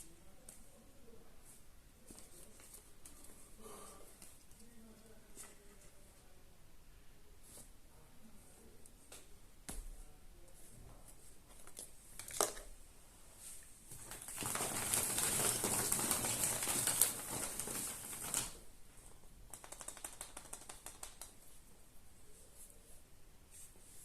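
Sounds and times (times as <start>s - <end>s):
foil wrapper crinkling: 14.0s - 18.6s.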